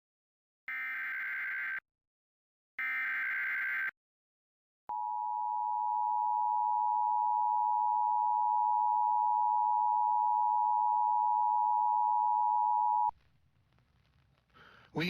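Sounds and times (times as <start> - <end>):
two-tone alarm tone: 4.9 - 13.1.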